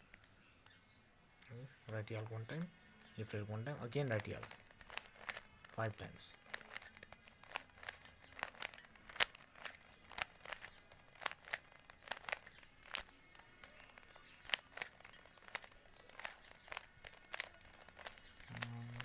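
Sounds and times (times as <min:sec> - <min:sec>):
puzzle cube twisting clicks: 0:03.8 - 0:19.0.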